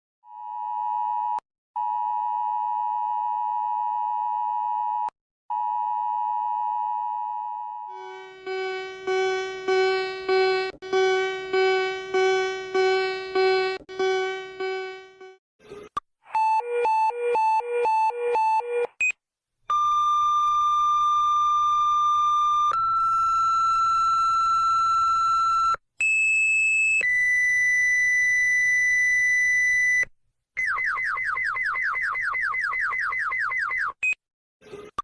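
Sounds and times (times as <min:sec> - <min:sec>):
long steady alert tones: 0:07.9 - 0:15.4.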